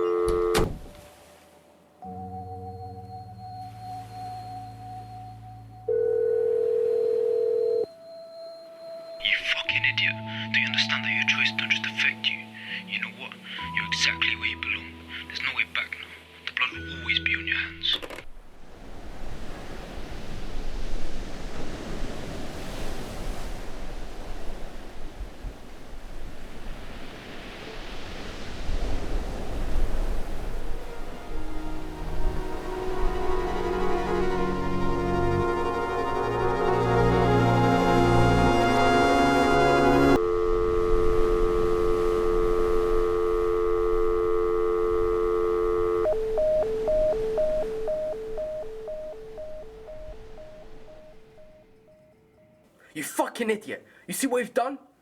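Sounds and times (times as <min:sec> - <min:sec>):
fast busy tone beeping: 0:00.0 - 0:00.6, 0:40.2 - 0:52.6
telephone dial tone: 0:00.0 - 0:00.7, 0:05.9 - 0:07.9, 0:40.1 - 0:51.8.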